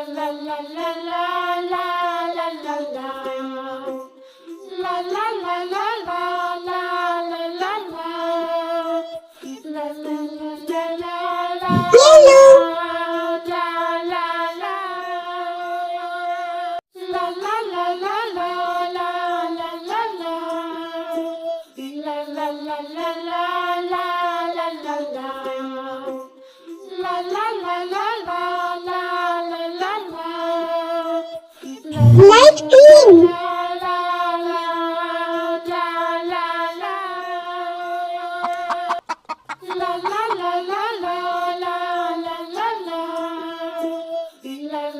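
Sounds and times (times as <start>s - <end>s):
child-like voice singing: 11.6s - 12.9s, 32.0s - 33.4s, 38.4s - 41.2s.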